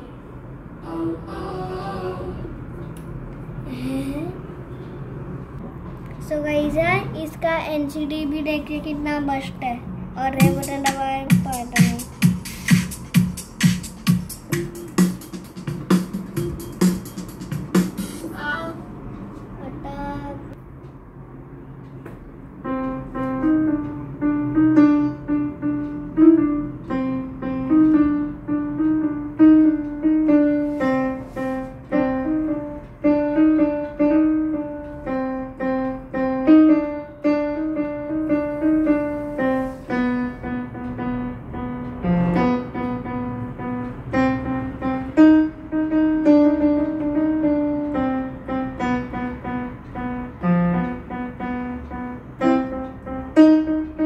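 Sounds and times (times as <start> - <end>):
keyboard piano melody: 10.2 - 18.9, 22.3 - 54.0.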